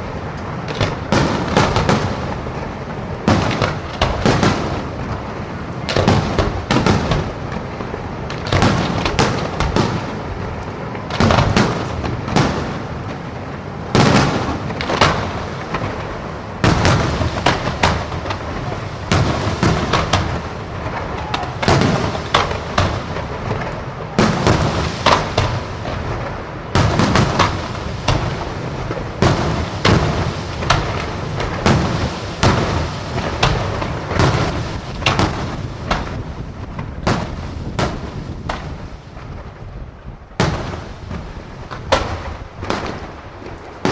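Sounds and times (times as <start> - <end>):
firework crackling: 0.0 - 43.9
firework shell bursts and bangs: 13.9 - 38.7.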